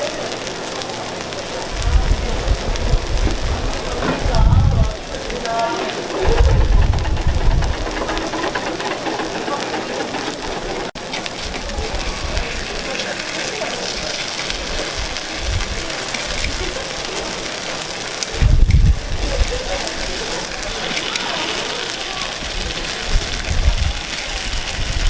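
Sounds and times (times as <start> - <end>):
batter sizzling on a griddle: 0.0 - 25.0
low bump: 2.8 - 11.0.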